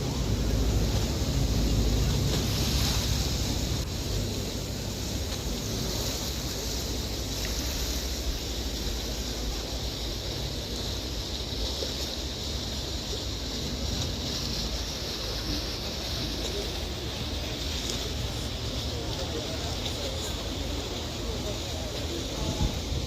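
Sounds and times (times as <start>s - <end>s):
low boat engine rumble: 0.0s - 23.0s
water rushing: 0.0s - 23.0s
wind buffeting microphone: 0.0s - 23.0s.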